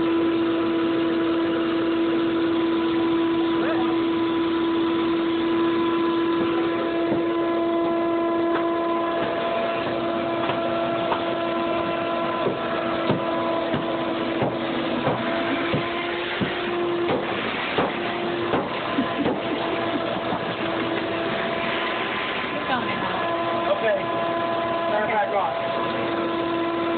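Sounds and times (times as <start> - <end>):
electric pump humming: 0.0 - 26.9
water rushing: 14.0 - 26.8.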